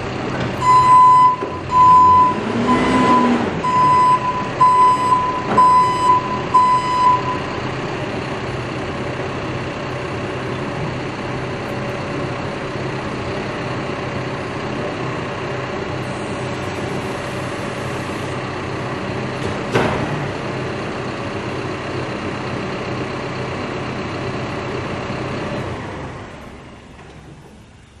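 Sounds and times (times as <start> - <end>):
diesel engine running: 0.0 - 28.0
backup alarm beeping: 0.6 - 7.5.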